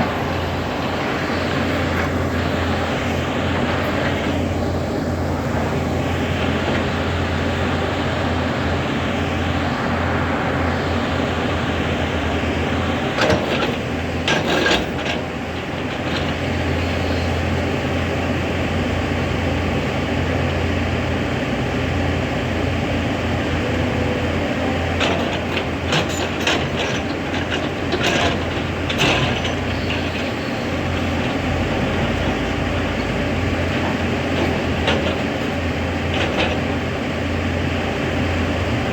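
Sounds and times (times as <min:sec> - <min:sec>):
diesel engine running under load: 0:00.0 - 0:38.9
metallic clanks and knocks: 0:25.0 - 0:32.4.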